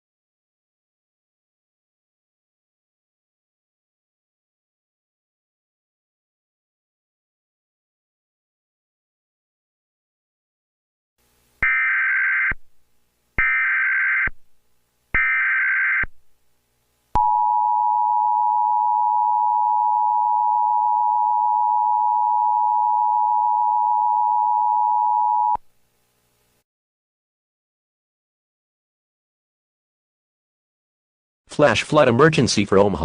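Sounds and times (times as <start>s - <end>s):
two-tone attention signal: 17.2s - 25.6s.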